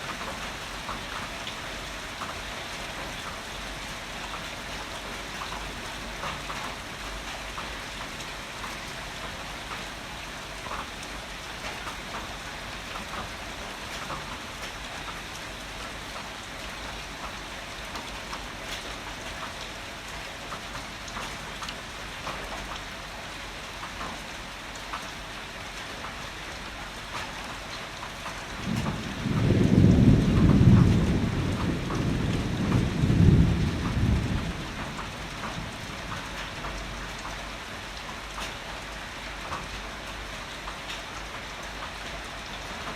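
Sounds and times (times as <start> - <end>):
heavy rain falling: 0.0 - 42.9
long roll of thunder: 28.6 - 36.6.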